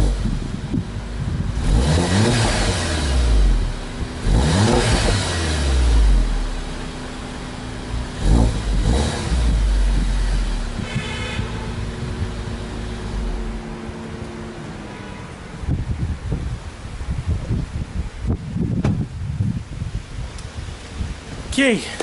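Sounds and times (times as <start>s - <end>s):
car engine revving: 0.0s - 15.7s.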